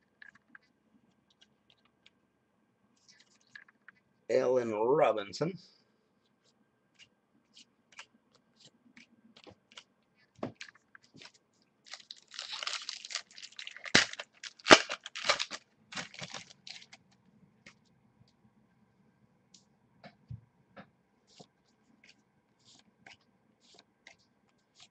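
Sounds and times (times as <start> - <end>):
foil wrapper tearing and crinkling: 11.9 - 17.0.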